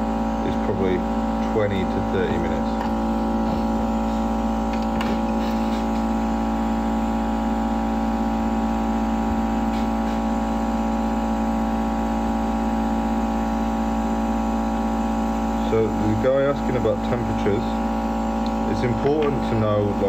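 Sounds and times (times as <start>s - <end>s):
electrical hum: 0.0s - 20.0s.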